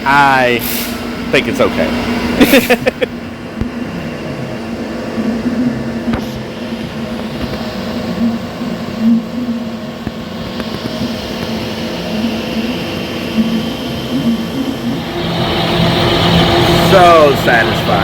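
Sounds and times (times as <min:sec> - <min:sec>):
welding arc buzzing hiss: 0:00.1 - 0:03.1.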